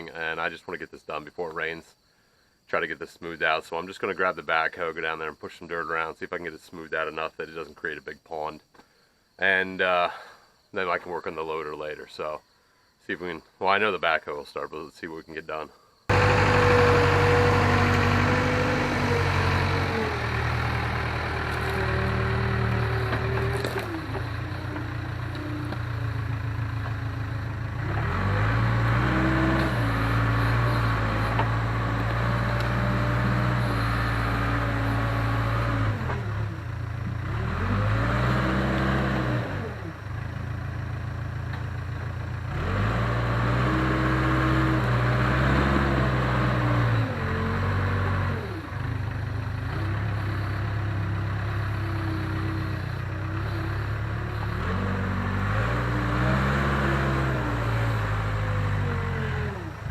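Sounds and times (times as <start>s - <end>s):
diesel engine revving under load: 16.1s - 59.9s.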